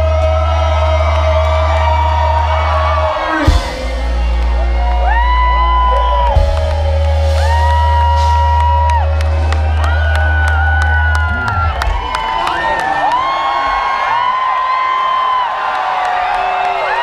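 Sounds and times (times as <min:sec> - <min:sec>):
live band music: 0:00.0 - 0:12.8
fans whooping: 0:00.0 - 0:17.0.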